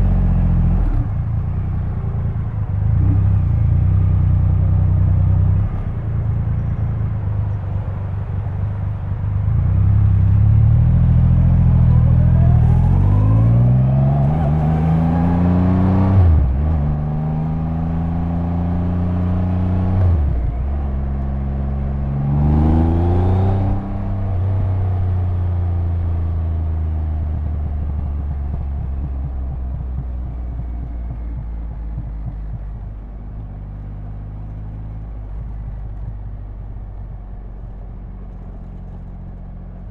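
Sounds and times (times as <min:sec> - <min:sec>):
motorcycle engine accelerating: 0:09.6 - 0:39.9.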